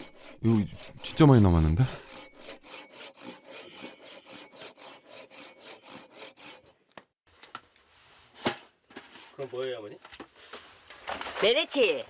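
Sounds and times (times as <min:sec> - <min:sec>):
hand saw cutting log: 0:00.0 - 0:06.8.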